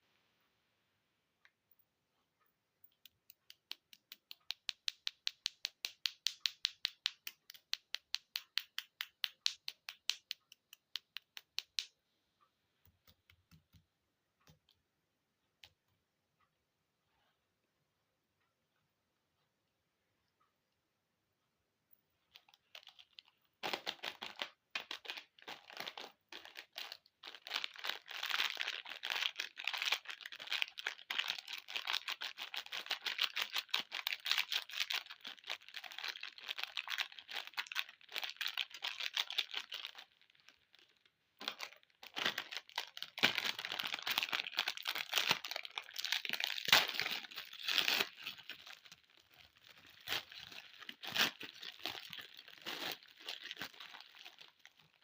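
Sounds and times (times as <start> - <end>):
plastic wrappers crinkling and tearing: 22.3 - 55.0.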